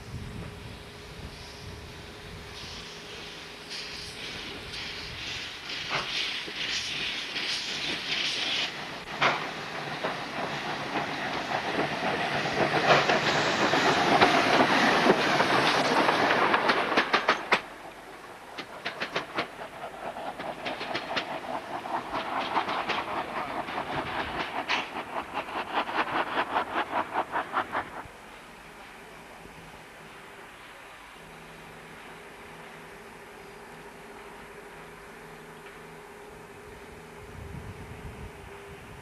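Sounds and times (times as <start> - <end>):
wagon wheels clacking over rail joints: 9.1 - 27.9.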